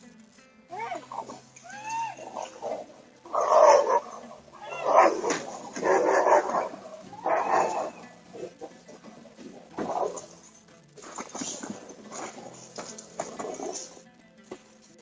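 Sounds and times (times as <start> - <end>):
dogs fighting and barking: 2.2 - 8.8
dog yelping: 3.3 - 8.0.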